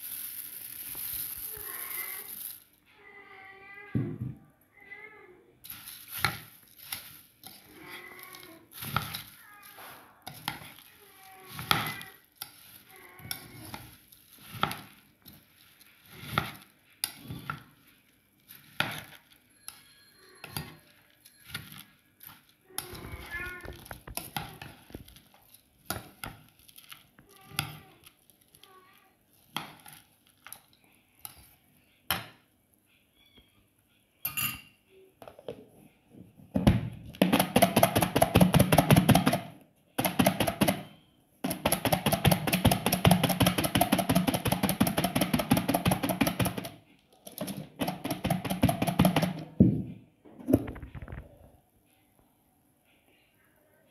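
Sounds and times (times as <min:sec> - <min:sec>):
spoon stirring puffed rice: 0:00.0 - 0:02.9, 0:05.6 - 0:32.5, 0:37.1 - 0:49.6
spoon clinking against bowl: 0:18.8 - 0:22.9, 0:34.2 - 0:34.8.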